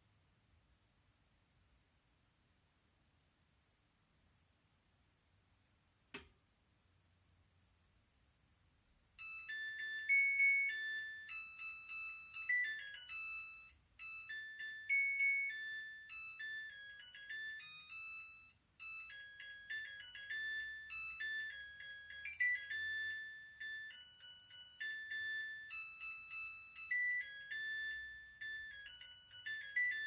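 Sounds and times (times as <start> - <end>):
washing machine beeping tune: 9.2 - 30.0.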